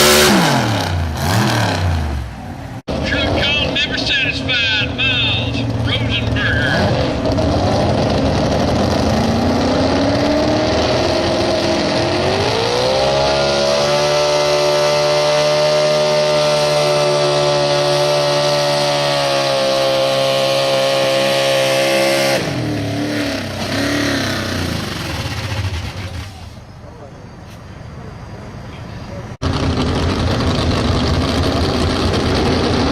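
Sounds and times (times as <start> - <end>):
truck engine at full throttle: 0.0 - 32.9.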